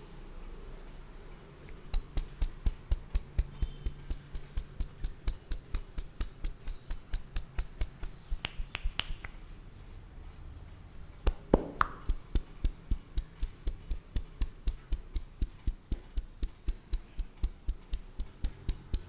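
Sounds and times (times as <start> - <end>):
hands slapping on head: 1.6 - 9.4, 11.2 - 19.0.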